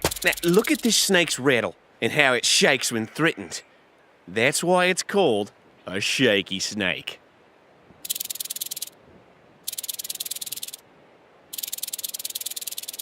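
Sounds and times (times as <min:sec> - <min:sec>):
rattlesnake rattling: 0:00.0 - 0:00.9, 0:08.0 - 0:09.0, 0:09.7 - 0:10.8, 0:11.5 - 0:13.0.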